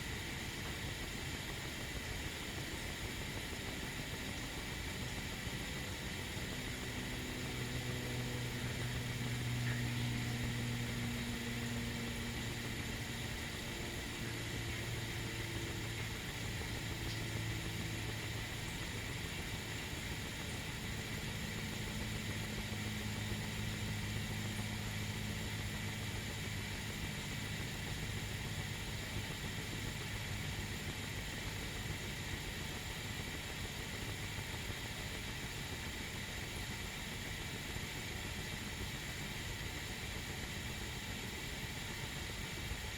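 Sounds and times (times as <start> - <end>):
kettle hissing on stove: 0.0 - 42.9
low wavering hum: 2.5 - 32.4.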